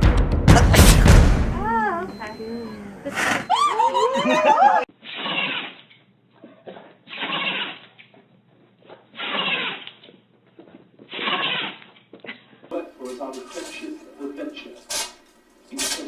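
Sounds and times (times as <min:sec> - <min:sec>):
animal sneezing: 0:05.0 - 0:05.8, 0:06.6 - 0:07.9, 0:09.2 - 0:09.8, 0:11.1 - 0:11.8.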